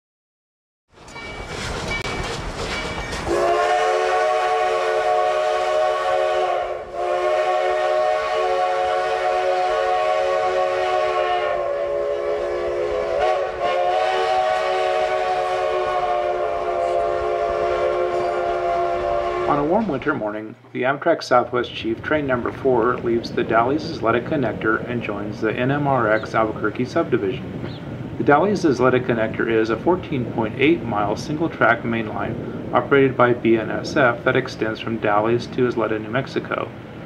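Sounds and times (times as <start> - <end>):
train rumbling: 0.9 - 37.0
locomotive horn blasts: 3.3 - 19.8.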